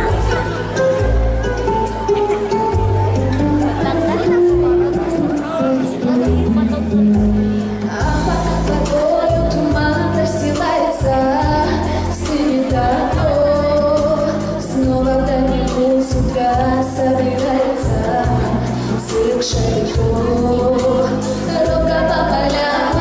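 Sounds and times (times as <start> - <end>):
pulsing bass line: 0.0 - 18.8
woman singing: 7.8 - 23.0.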